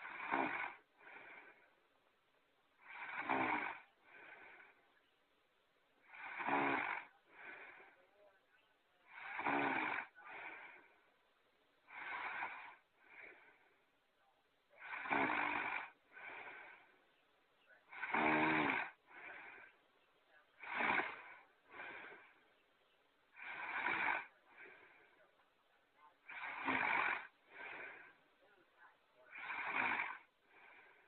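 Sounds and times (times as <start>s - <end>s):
cartoon snoring sound effect: 0.0s - 0.9s, 2.8s - 4.7s, 6.0s - 7.7s, 9.1s - 10.8s, 11.9s - 13.4s, 14.8s - 16.8s, 17.9s - 19.7s, 20.6s - 22.3s, 23.4s - 24.8s, 26.2s - 28.1s, 29.3s - 30.8s.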